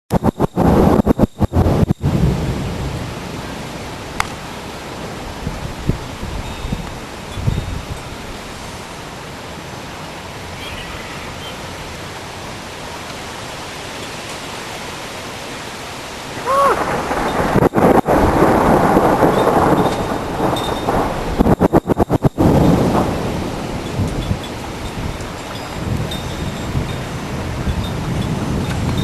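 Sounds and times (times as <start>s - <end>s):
thunderclap rumbling: 0.1s - 6.9s, 16.4s - 29.0s
rain hiss: 0.1s - 29.0s.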